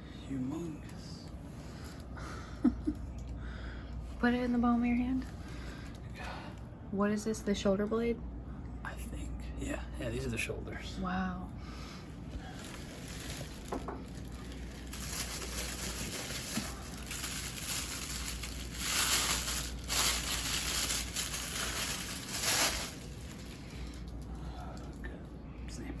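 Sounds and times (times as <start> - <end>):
packaging crinkling and rustling: 12.4 - 24.9.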